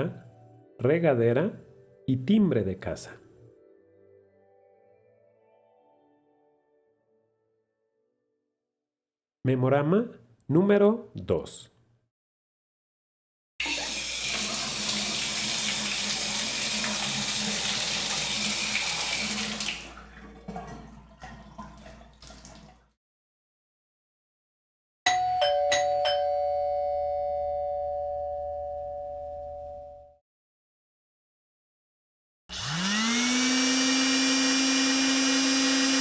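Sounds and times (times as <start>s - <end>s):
shower water spraying: 13.6s - 20.0s
water dripping and splashing: 13.8s - 23.0s
doorbell clicks: 25.1s - 30.1s
doorbell ding-dong chime: 25.1s - 30.2s.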